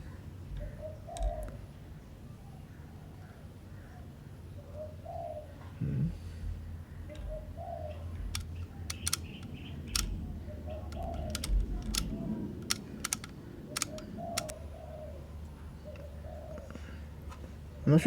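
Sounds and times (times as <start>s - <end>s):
dove cooing: 0.0s - 2.1s, 3.0s - 17.7s
camera dial clicks: 8.3s - 10.2s, 10.9s - 14.6s.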